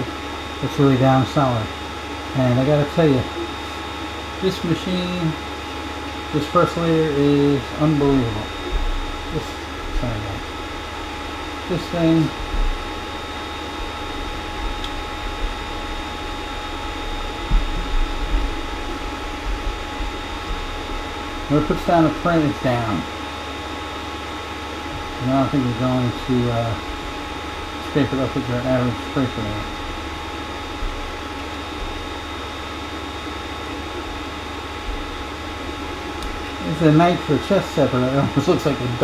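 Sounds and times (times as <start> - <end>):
constant whining tones: 0.0 - 39.0
printer fan noise: 0.0 - 39.0
low bumps: 7.9 - 22.9.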